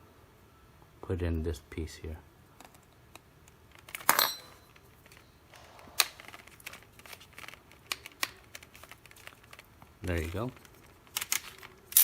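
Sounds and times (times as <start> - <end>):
plastic parts clicking and knocking: 2.6 - 12.0.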